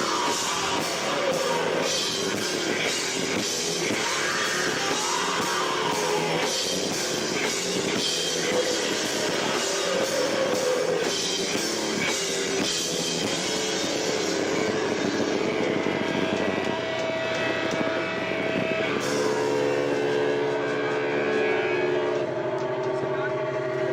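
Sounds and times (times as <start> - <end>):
live rock band playing: 0.0 - 23.9.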